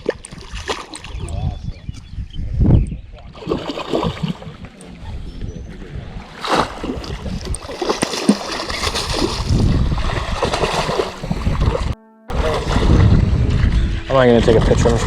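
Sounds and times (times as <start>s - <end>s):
water splashing and sloshing: 0.0s - 1.3s, 3.2s - 13.7s
low rumble: 9.4s - 15.0s.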